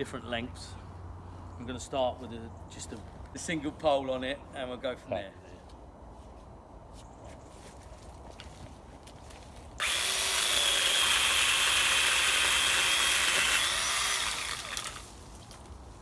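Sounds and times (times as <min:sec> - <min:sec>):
pole saw motor whining: 0:09.8 - 0:15.2.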